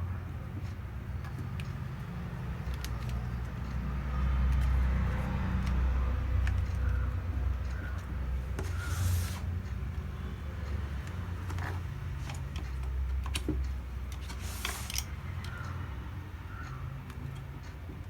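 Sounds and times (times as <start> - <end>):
hands clicking and scraping hard drive: 1.1 - 10.0, 10.6 - 15.9.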